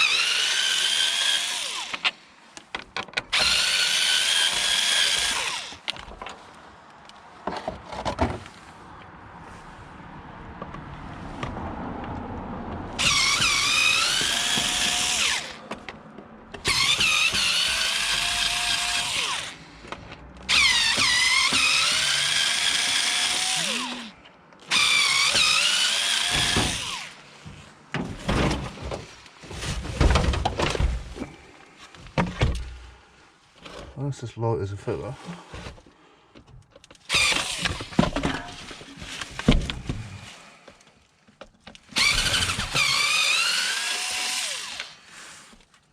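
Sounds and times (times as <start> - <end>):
cordless power drill whining: 0.0 - 2.2, 3.2 - 6.1, 13.0 - 15.8, 16.6 - 19.9, 20.5 - 27.4, 37.1 - 38.2, 41.7 - 45.3
knocks and clatter of parts: 1.9 - 3.6, 5.7 - 6.5, 7.4 - 8.7, 26.2 - 31.4, 32.0 - 32.8, 35.5 - 42.9.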